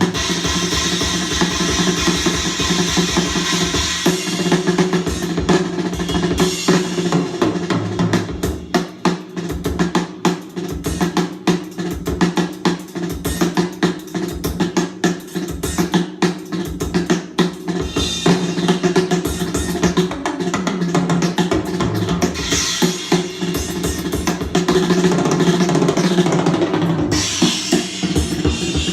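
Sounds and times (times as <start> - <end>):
music with drum-kit beat: 0.0 - 28.9.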